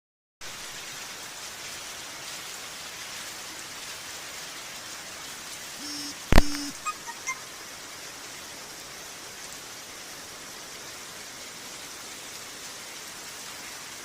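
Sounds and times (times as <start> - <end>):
electronic tone: 5.8 - 7.4.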